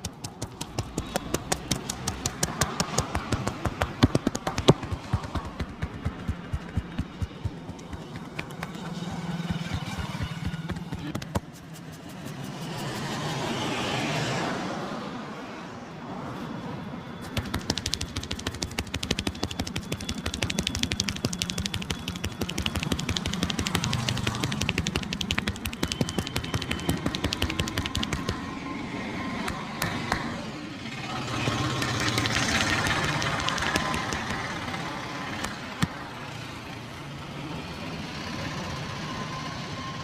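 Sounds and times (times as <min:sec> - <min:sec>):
hands slapping in massage: 0:00.0 - 0:12.0, 0:17.3 - 0:28.5, 0:29.4 - 0:30.3, 0:31.8 - 0:34.5
low traffic hum: 0:00.0 - 0:40.0.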